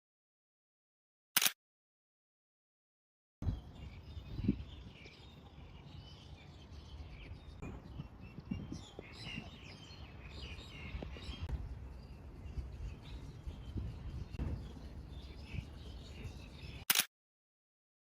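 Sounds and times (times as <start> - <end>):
low background rumble: 3.4 - 16.8
small birds chirping: 3.4 - 17.0.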